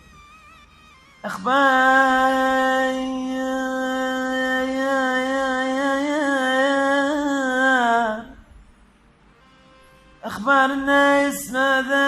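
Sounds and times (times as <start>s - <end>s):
man singing a long note: 1.2s - 8.4s, 10.2s - 12.0s.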